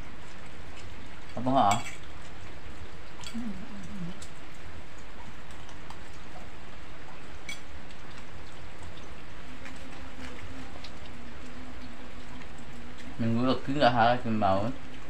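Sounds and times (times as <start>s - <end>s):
steady rain falling: 0.0s - 15.0s.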